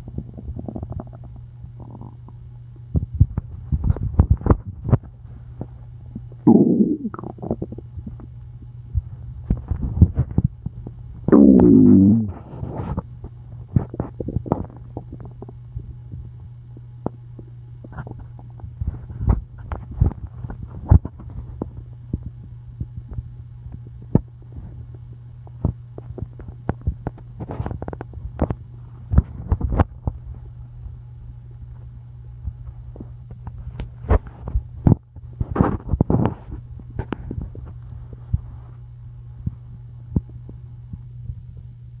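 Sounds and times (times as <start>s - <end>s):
stomach gurgling: 0.0s - 3.4s, 6.1s - 8.3s, 11.3s - 13.1s, 13.7s - 15.6s
steady low hum: 0.0s - 42.0s.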